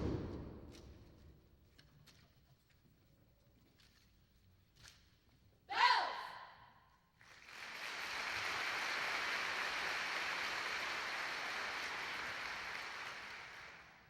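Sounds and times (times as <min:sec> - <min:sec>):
audience applauding: 0:07.2 - 0:14.0.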